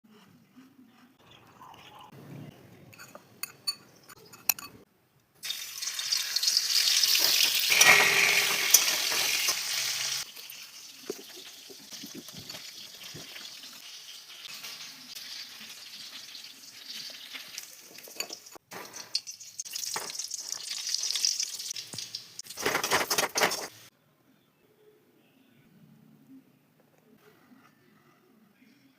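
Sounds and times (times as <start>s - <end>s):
stirring: 2.9s - 4.8s, 16.9s - 23.8s
food sizzling in hot oil: 5.4s - 23.9s.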